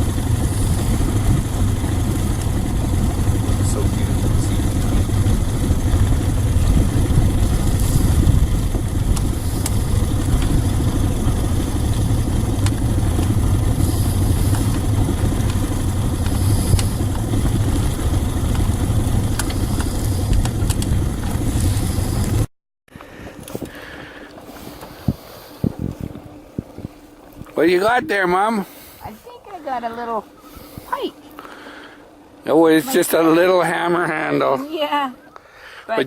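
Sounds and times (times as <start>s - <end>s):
outboard motor running: 0.0s - 36.0s.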